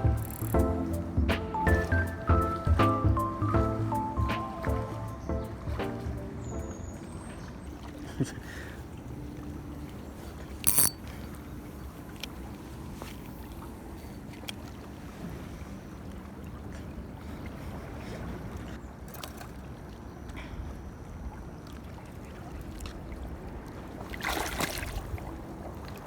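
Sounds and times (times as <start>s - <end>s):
sharp clicks: 0.0s - 0.6s, 10.6s - 11.0s
boat engine rumble: 0.0s - 18.8s.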